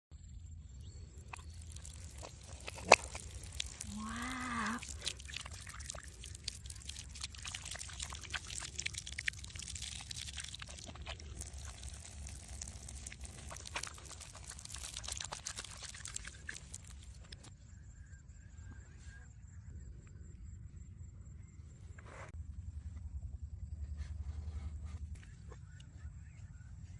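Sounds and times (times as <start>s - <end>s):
water dripping and trickling: 0.9s - 17.5s.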